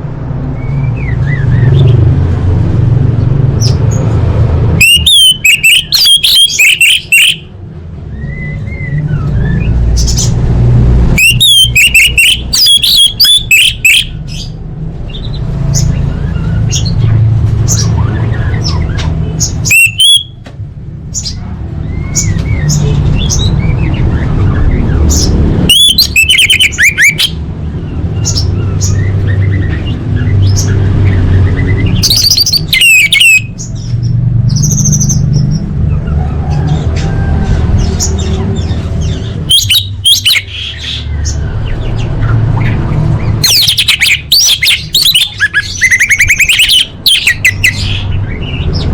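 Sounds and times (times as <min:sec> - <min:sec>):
thrush singing whistled phrases: 0:04.8 - 0:07.5, 0:11.2 - 0:14.2, 0:19.6 - 0:20.4, 0:25.7 - 0:27.4, 0:31.5 - 0:33.6, 0:39.5 - 0:41.0, 0:43.4 - 0:48.0.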